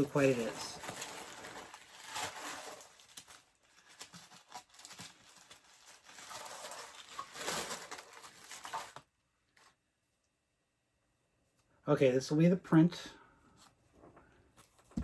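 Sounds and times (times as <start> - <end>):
packaging rustling and crinkling: 0.0 - 9.1.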